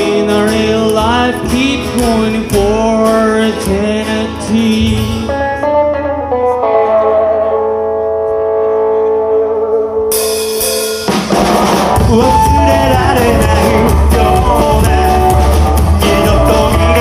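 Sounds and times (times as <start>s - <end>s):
rockabilly band playing live: 0.0s - 17.0s
guitar chord ringing: 3.9s - 14.6s.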